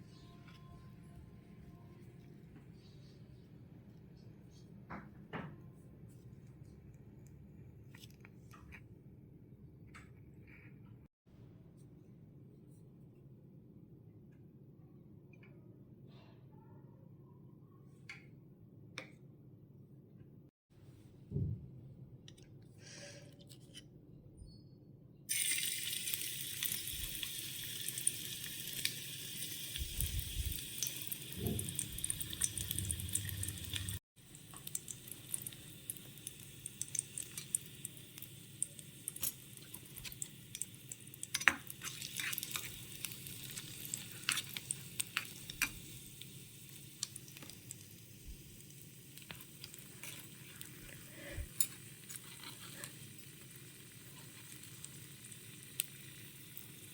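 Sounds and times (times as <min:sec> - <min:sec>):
food sizzling in hot oil: 0:25.3 - 0:56.9.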